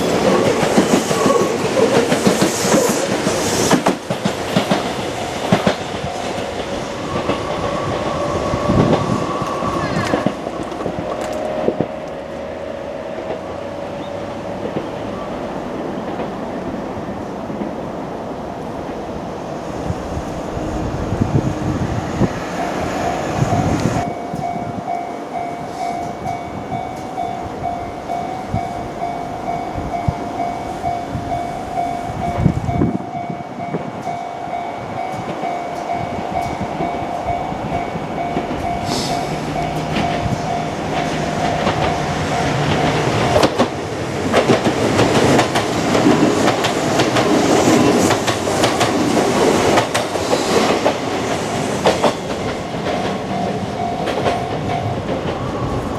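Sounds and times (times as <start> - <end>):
train wheels clattering over rail joints: 0.0 - 12.2, 38.2 - 55.9
level-crossing bell ringing: 5.2 - 7.1, 22.6 - 43.5, 53.1 - 55.2.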